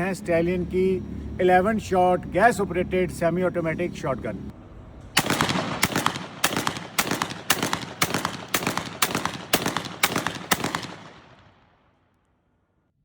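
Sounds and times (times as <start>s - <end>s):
shotgun shots: 5.2s - 11.6s.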